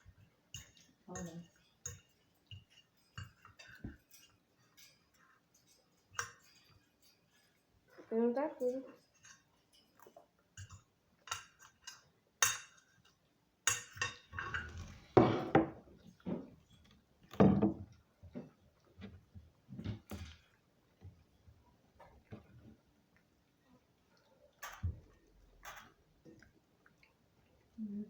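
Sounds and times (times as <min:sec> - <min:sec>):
cutlery clinking on a plate: 0:00.0 - 0:07.7, 0:08.9 - 0:16.5.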